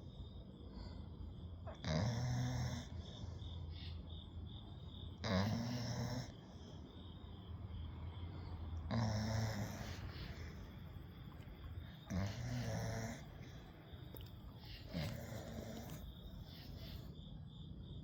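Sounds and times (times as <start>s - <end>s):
puppy snoring: 1.6s - 3.3s, 5.1s - 6.4s, 8.8s - 10.6s, 11.9s - 17.1s.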